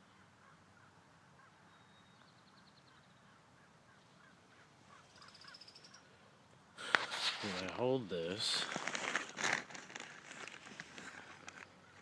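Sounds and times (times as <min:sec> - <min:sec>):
faint distant bird chirps: 0:00.0 - 0:06.7
high bird trill: 0:04.2 - 0:06.2.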